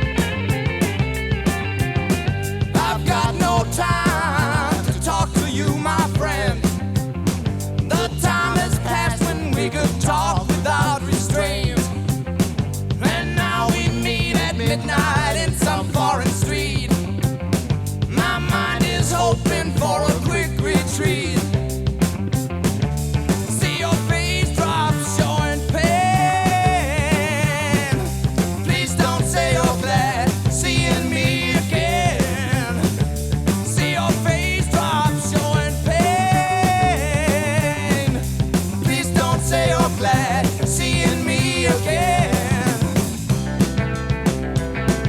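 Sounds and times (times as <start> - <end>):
rock band playing: 0.0 - 45.0.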